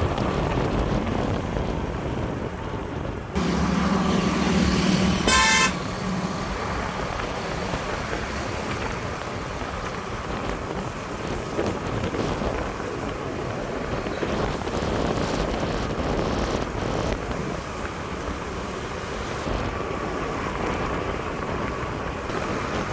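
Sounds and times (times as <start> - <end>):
vehicle engine hum and road noise: 0.0 - 22.9
vehicle horn honk: 5.1 - 6.0.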